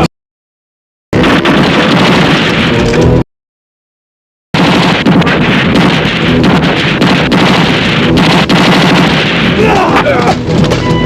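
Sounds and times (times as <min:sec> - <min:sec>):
sharp cracks: 0:01.2 - 0:03.2, 0:04.6 - 0:10.8.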